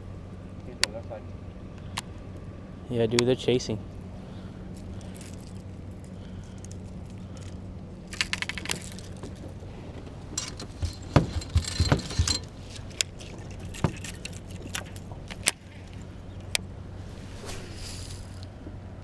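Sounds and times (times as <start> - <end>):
steady low hum: 0.0 - 19.0
low thumps: 10.0 - 12.5
metallic clinking and clicking: 10.3 - 13.1.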